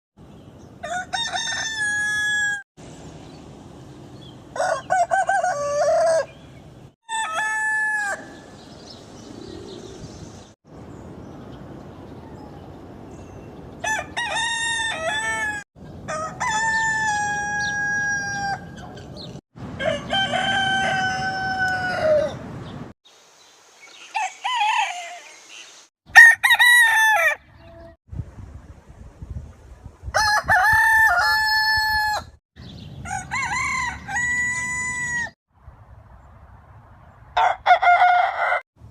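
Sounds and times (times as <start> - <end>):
roosters crowing: 0.8 - 2.6, 4.5 - 10.0, 13.8 - 22.5, 24.0 - 27.9, 30.2 - 32.4, 33.0 - 35.4, 37.4 - 38.6.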